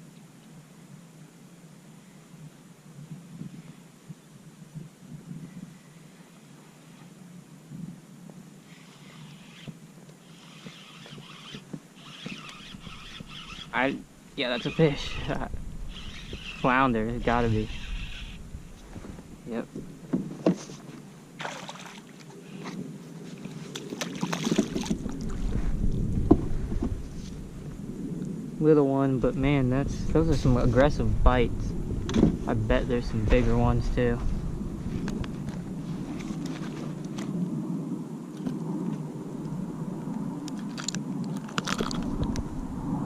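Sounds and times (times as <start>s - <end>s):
wind rumble on microphone: 2.3s - 9.8s, 10.4s - 21.2s, 22.5s - 43.0s
clicks and rattles of fishing gear: 40.5s - 42.5s.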